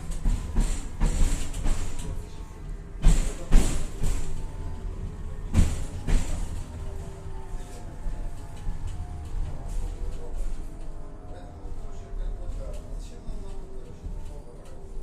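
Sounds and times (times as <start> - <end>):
tram rumbling: 0.0 - 15.0.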